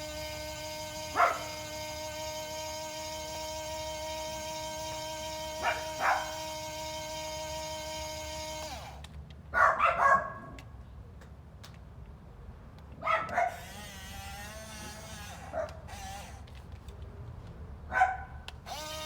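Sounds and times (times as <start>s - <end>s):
dog barking: 1.2s - 1.4s, 5.6s - 6.3s, 9.6s - 10.6s, 13.0s - 13.6s, 17.9s - 18.4s.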